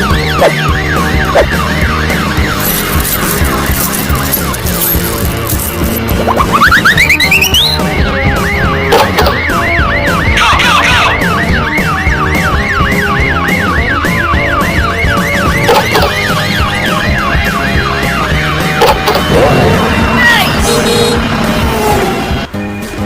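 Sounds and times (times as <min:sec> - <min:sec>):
siren wailing: 0:00.0 - 0:02.7, 0:06.3 - 0:18.5
background music: 0:00.0 - 0:23.0.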